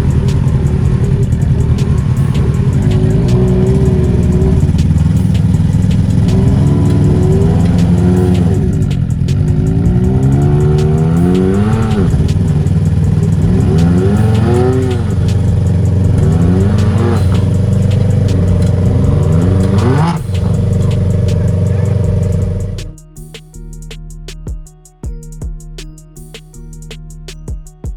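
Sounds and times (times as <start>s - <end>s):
engine revving: 0.0s - 23.0s.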